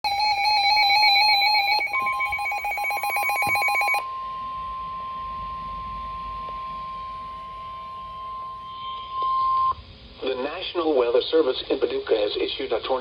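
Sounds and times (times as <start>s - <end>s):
warbling electronic alert tone: 0.0s - 4.0s
steady single-pitch alarm tone: 0.0s - 9.8s.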